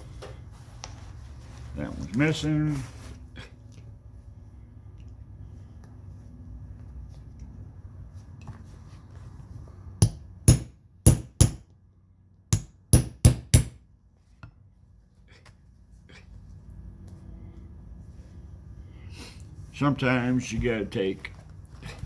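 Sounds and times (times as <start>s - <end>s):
hammer striking a metal punch: 10.0s - 11.6s, 12.6s - 13.8s.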